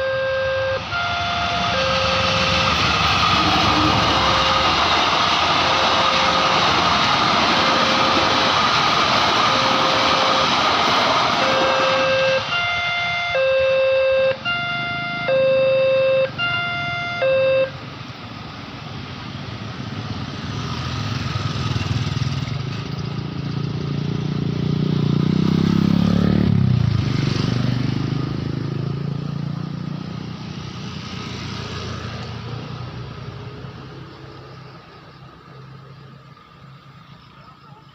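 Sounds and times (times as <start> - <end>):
level crossing warning siren: 0.0 - 18.0
vehicle engine passing: 0.8 - 12.9, 18.3 - 37.0.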